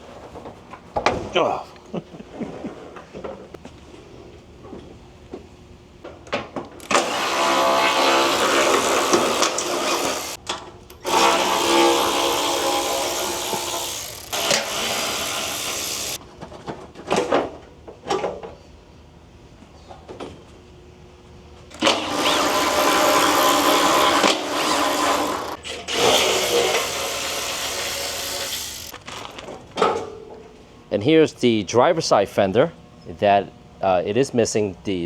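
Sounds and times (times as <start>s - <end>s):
power tool motor running: 6.8s - 10.4s, 11.0s - 16.2s, 21.8s - 29.0s.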